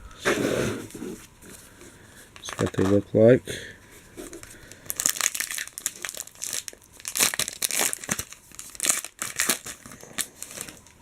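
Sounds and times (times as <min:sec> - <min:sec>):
wrapper tearing and crinkling: 0:04.4 - 0:11.0.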